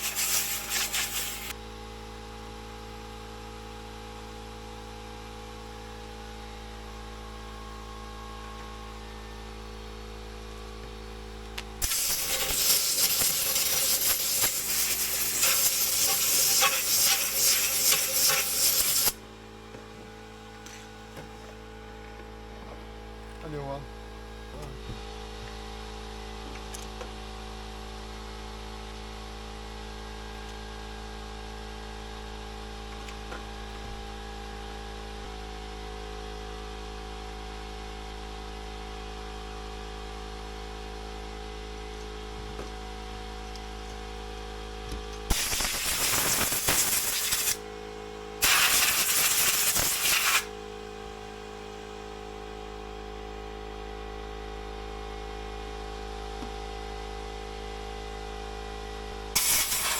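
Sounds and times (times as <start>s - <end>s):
loud hissing bursts: 0.0s - 1.5s, 11.8s - 19.2s, 45.3s - 47.6s, 48.4s - 50.5s, 59.4s - 59.9s
steady hum: 0.0s - 1.6s, 11.1s - 25.0s.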